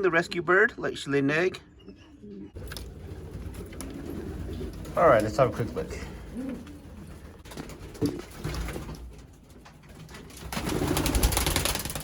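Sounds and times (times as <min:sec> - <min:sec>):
pigeons cooing: 0:01.7 - 0:08.3.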